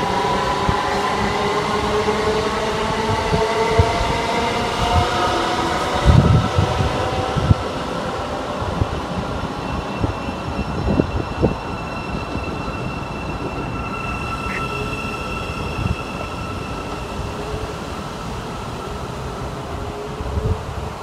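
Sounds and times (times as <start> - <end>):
train wheels rumbling on rail: 0.0 - 21.0
high whine: 8.6 - 20.8.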